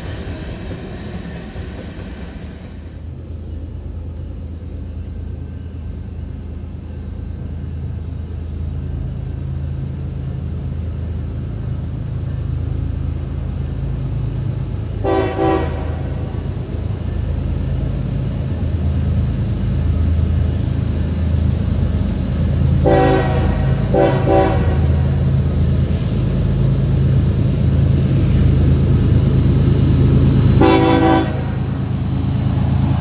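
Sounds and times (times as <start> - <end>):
diesel locomotive engine drone: 0.0 - 33.0
train horn blast: 15.0 - 16.5, 22.8 - 25.2, 30.6 - 31.9.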